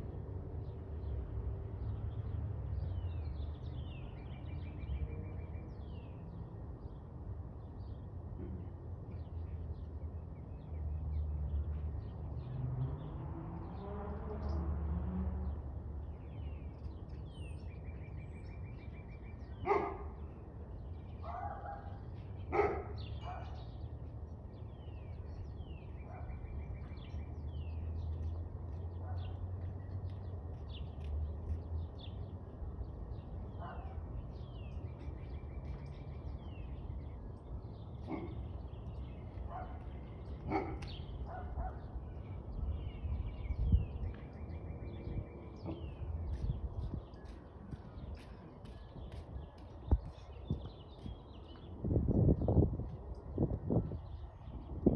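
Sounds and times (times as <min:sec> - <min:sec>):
dog barking: 0:19.6 - 0:20.2, 0:21.2 - 0:23.6, 0:33.6 - 0:34.0, 0:38.1 - 0:38.4, 0:39.5 - 0:39.9, 0:40.5 - 0:41.9
birds chirping and singing: 0:33.0 - 0:52.6.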